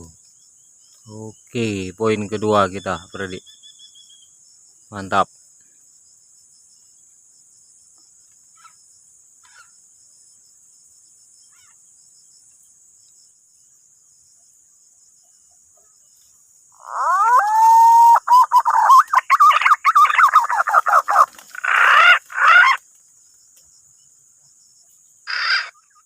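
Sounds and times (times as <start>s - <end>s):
high insect drone: 0.0s - 26.0s
whistled pigeon calls: 16.9s - 22.8s.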